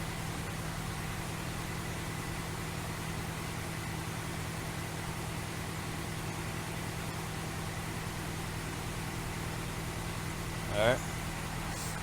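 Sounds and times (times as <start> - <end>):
vehicle engine idling: 7.2 - 12.0.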